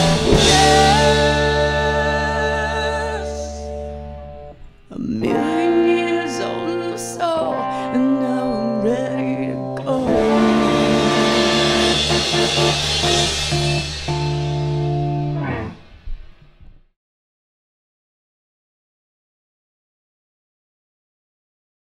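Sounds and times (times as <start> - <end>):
rock band playing live: 0.0 - 4.6, 5.2 - 16.3
electric guitar bending notes: 0.0 - 16.7.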